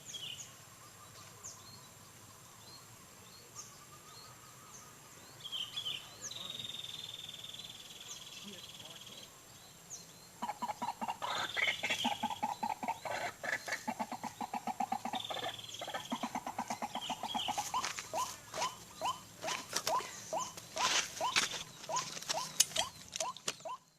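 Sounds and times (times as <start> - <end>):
waterhen croaking calls: 10.4 - 23.9.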